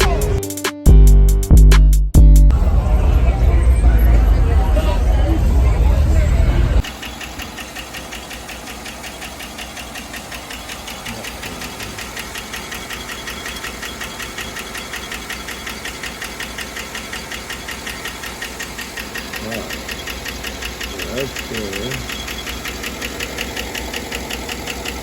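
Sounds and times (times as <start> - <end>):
motor running steadily: 4.5 - 25.0
rapid even ticking: 6.8 - 25.0.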